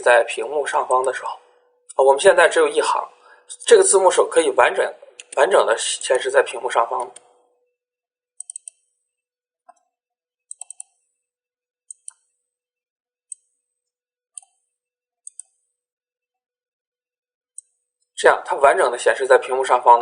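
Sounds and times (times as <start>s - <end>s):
computer mouse clicking: 5.1s - 5.5s, 7.0s - 7.4s, 8.4s - 8.9s, 10.5s - 11.0s, 11.9s - 12.3s, 13.3s - 13.6s, 14.4s - 14.6s, 15.2s - 15.7s.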